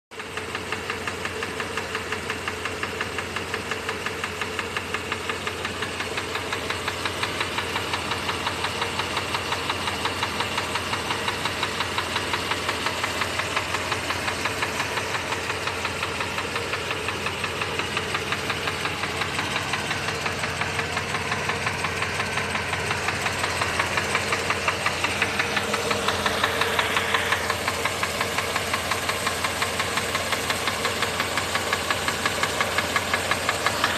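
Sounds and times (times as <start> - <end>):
car engine running: 0.2 - 33.9
rhythmic engine knock: 0.2 - 33.9.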